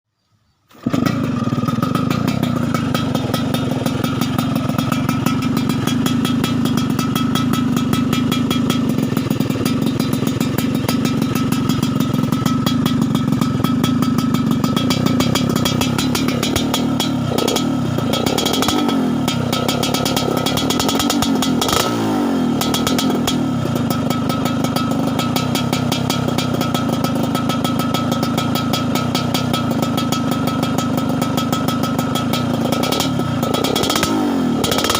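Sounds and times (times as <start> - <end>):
motorcycle exhaust revving: 0.7 - 34.9.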